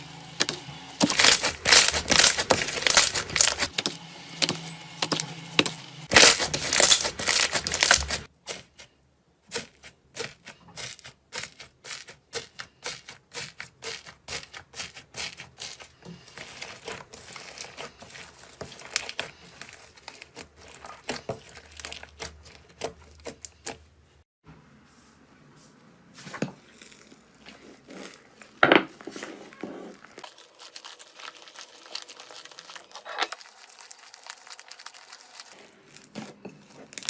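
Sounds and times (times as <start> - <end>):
slime crackling: 1.0 - 3.8, 6.1 - 8.3, 10.2 - 23.7, 29.4 - 37.0.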